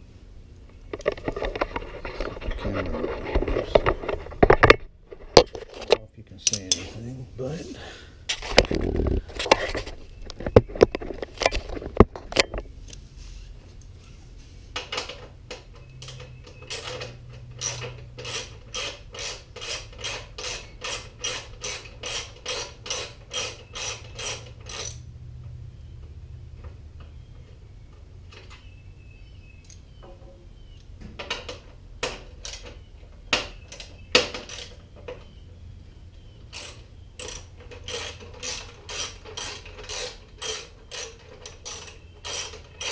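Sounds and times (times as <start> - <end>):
metal tools clinking: 6.4 - 7.1, 36.5 - 42.9
ratchet wrench clicking: 16.0 - 25.0, 36.5 - 42.9.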